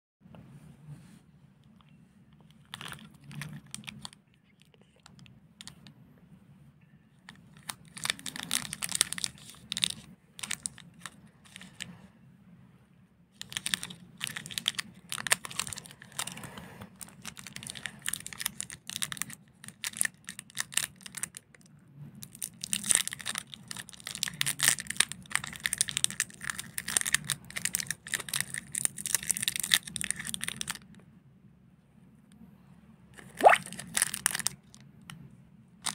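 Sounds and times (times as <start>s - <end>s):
plastic wrappers crinkling: 2.4s - 5.8s, 7.2s - 11.9s, 13.3s - 21.6s, 22.2s - 30.9s, 33.2s - 34.8s.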